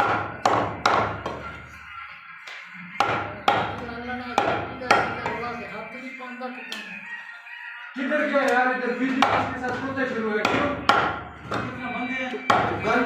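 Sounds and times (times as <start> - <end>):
meat cleaver chopping: 0.0 - 1.4, 3.0 - 5.4, 9.1 - 11.8, 12.5 - 13.0.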